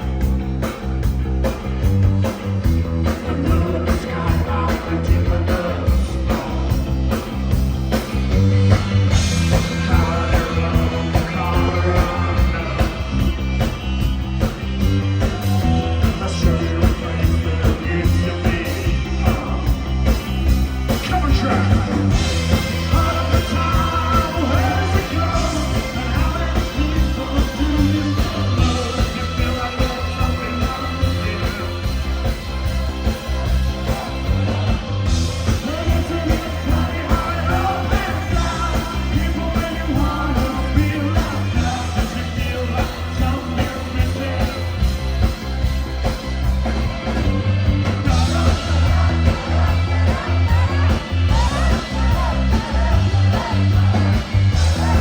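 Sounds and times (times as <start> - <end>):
bass: 0.0 - 55.0
drums: 0.0 - 55.0
guitars: 0.0 - 55.0
person singing: 20.9 - 34.6, 35.5 - 44.8, 48.0 - 55.0.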